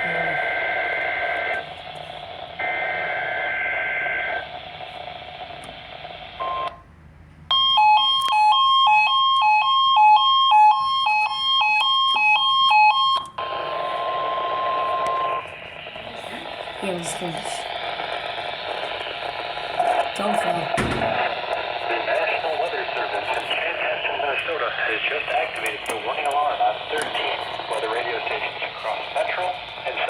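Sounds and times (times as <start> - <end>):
steady warning alarm tone: 0.0 - 4.5, 7.5 - 21.8
radio static hiss: 0.0 - 6.4, 13.4 - 30.0
radio alert beeps: 10.5 - 30.0.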